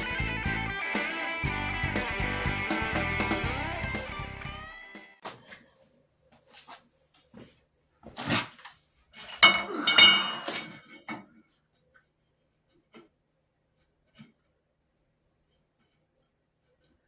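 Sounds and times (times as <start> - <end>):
steel pipe clanking on metal: 9.2 - 11.2.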